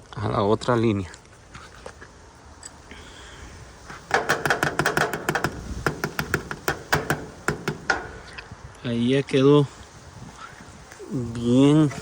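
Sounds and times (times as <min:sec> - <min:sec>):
sharp clicks and rattles: 0:03.9 - 0:08.5.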